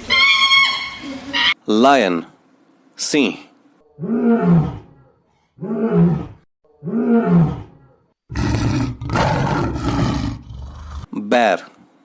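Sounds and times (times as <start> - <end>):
lion roaring: 4.0 - 11.1
rough noisy growl: 8.3 - 11.1.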